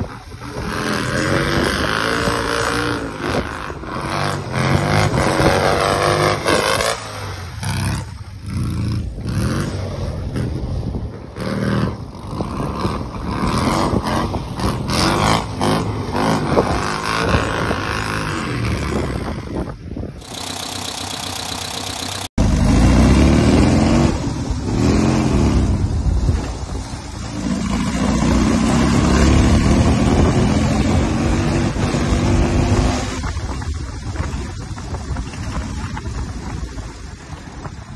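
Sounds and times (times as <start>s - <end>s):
buggy engine revving: 0.0s - 36.6s.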